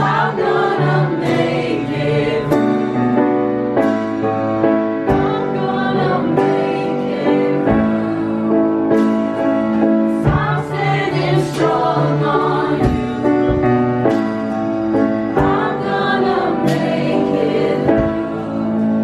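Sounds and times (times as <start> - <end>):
choir singing over chords: 0.0 - 19.0
music beat: 5.1 - 18.9.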